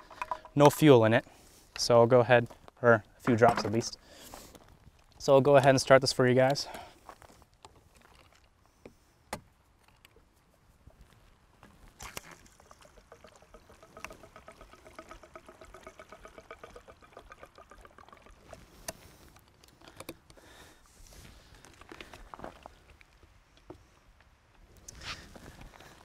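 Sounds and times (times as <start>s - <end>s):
fuel glugging into tank: 11.9s - 19.2s.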